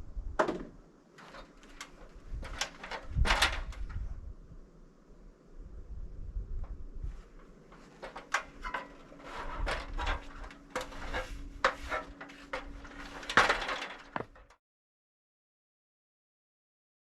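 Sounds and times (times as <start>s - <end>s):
faint steady hum: 0.0s - 14.5s
wood knocking and clunking: 7.7s - 14.5s.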